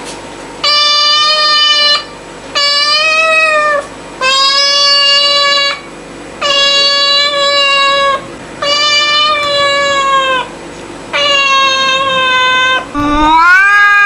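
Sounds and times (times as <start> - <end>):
cat meowing: 6.4 - 10.5, 11.2 - 14.0.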